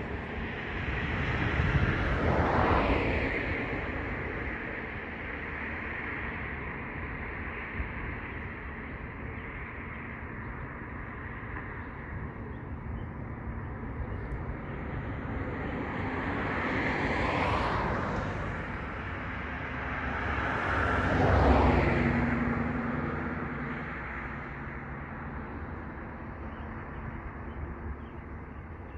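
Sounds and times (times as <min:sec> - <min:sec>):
low rumble of vehicles: 0:00.0 - 0:28.9
vehicle passing close by: 0:00.1 - 0:05.9, 0:14.5 - 0:25.8.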